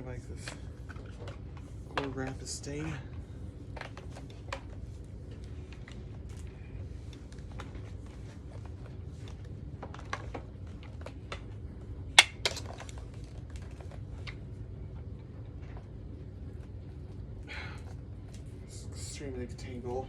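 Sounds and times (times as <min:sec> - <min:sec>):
sharp plastic clacks: 0:09.8 - 0:14.4.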